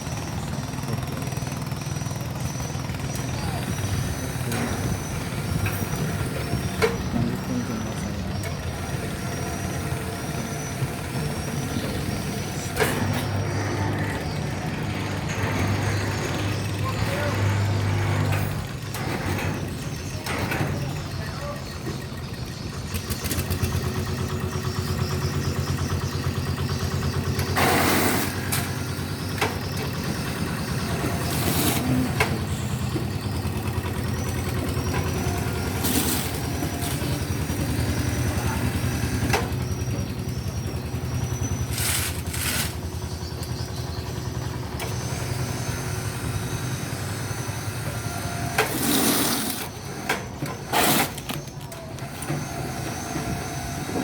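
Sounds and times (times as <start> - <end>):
large machinery engine running: 0.0 - 54.0
bursts of hissing air: 27.6 - 28.8.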